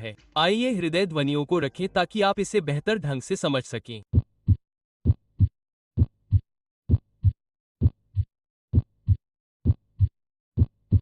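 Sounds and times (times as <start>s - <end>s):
heartbeat thumps: 4.1s - 11.0s.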